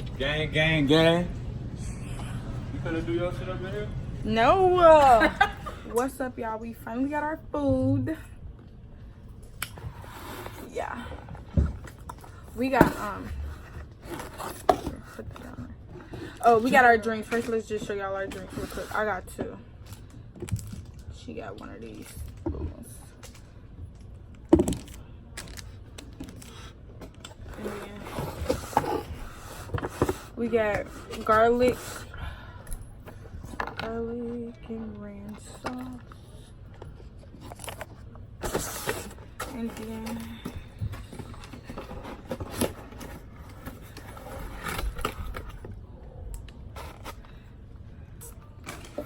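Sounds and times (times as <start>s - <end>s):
food containers scraping and knocking: 9.8s - 19.5s, 26.1s - 32.1s, 36.8s - 45.8s.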